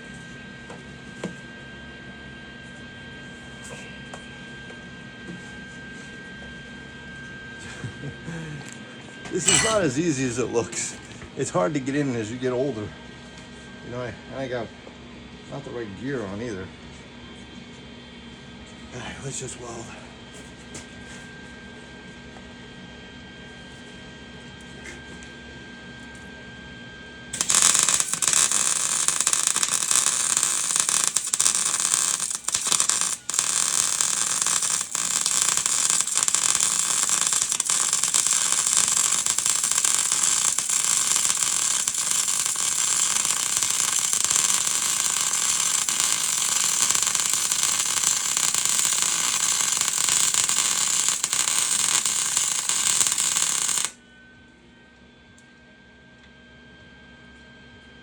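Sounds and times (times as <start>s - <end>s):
welder arc buzzing: 9.4s - 10.3s, 27.4s - 54.0s.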